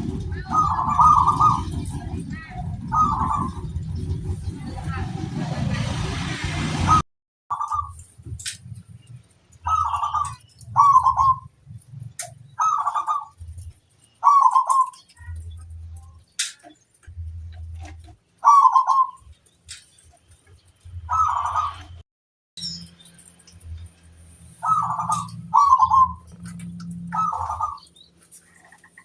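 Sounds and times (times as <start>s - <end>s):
dove cooing: 0.3s - 1.9s, 2.8s - 3.8s, 9.7s - 11.5s, 12.6s - 13.4s, 14.2s - 15.4s, 17.8s - 19.3s, 21.1s - 21.9s, 24.6s - 29.0s.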